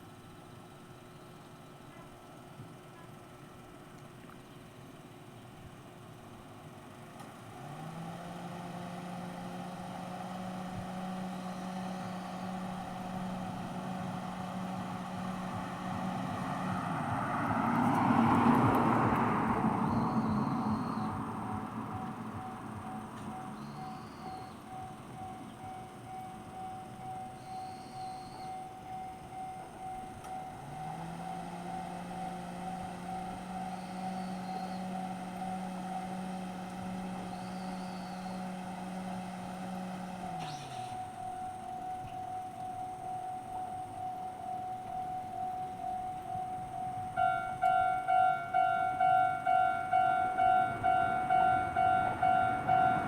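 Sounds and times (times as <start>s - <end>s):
low steady hum: 8.2s - 53.0s
level crossing warning bell: 9.3s - 18.7s, 19.8s - 53.0s
louder second bell ringing: 41.0s - 53.0s.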